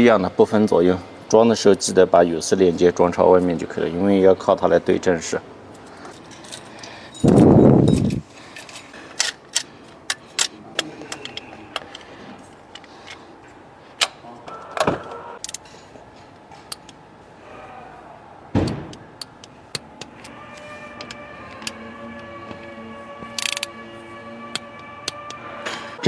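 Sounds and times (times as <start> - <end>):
loud knocks: 18.5 - 19.0.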